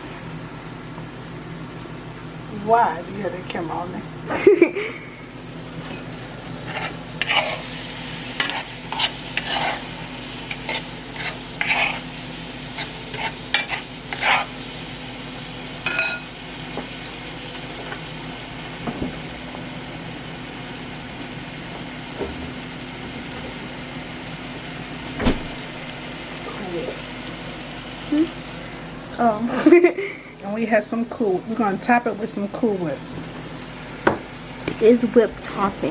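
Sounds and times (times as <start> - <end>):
banana slices sizzling in a pan: 0.0 - 35.9
utensil scraping a pan: 6.6 - 14.6
thump: 18.8 - 19.2, 25.1 - 25.7.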